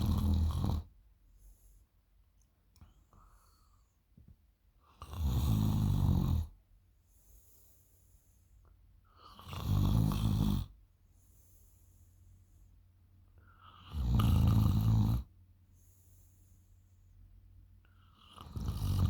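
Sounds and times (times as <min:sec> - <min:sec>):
girl snoring loudly: 0:00.0 - 0:00.9, 0:05.0 - 0:06.5, 0:09.4 - 0:10.7, 0:13.8 - 0:15.3, 0:18.2 - 0:19.0.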